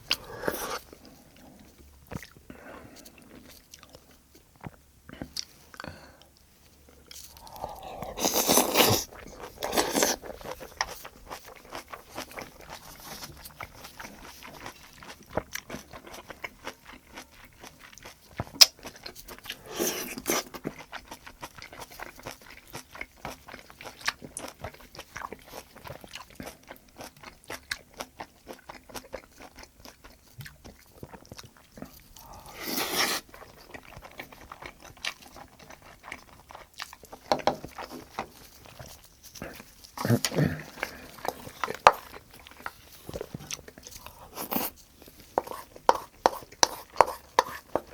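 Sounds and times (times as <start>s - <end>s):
close chewing: 0.0s - 47.9s
wet mouth clicks: 7.3s - 10.2s.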